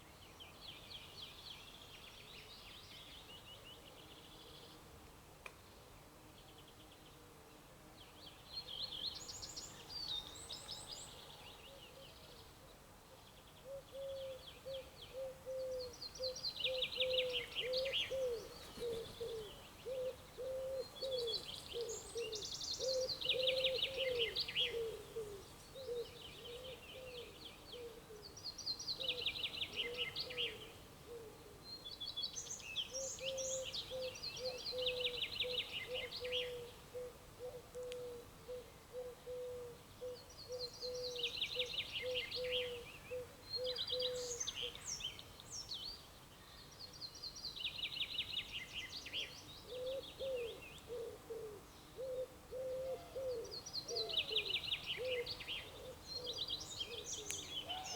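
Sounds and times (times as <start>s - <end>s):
songbirds trilling: 15.1s - 28.0s.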